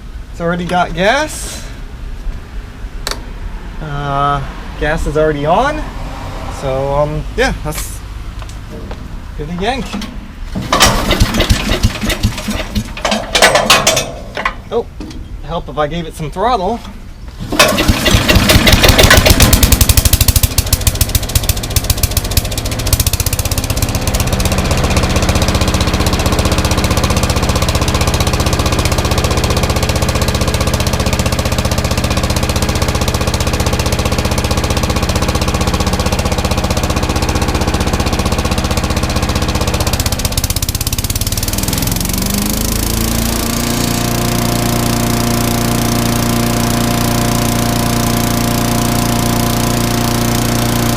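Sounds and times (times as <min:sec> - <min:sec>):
recoil starter pull: 0:09.9 - 0:14.7, 0:17.4 - 0:50.9
small engine starting and running: 0:10.5 - 0:14.4, 0:17.4 - 0:50.9.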